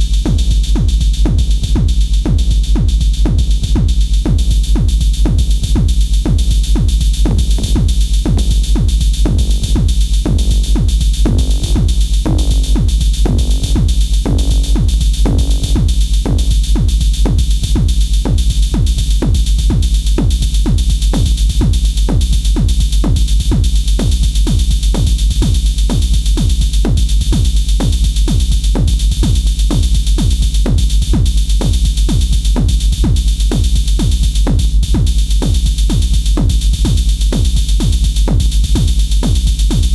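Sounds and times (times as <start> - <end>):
drum machine beat with heavy bass: 0.0 - 39.9.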